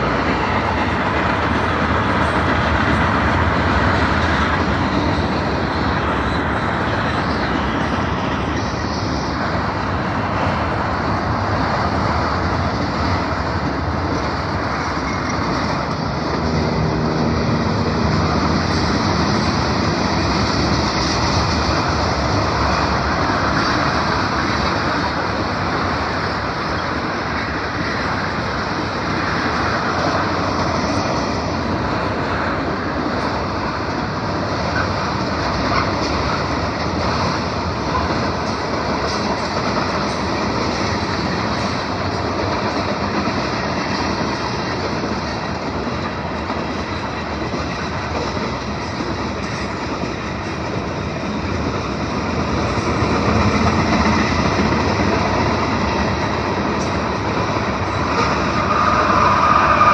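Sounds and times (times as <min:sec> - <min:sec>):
train wheels rattling on rails: 0:00.0 - 0:59.9.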